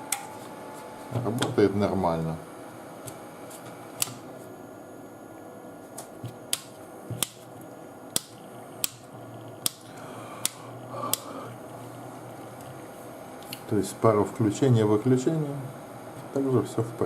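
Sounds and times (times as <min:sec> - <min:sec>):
steady hum: 0:00.0 - 0:17.0
switch clicking: 0:04.0 - 0:04.2, 0:06.0 - 0:07.4, 0:08.1 - 0:09.0, 0:09.6 - 0:11.3.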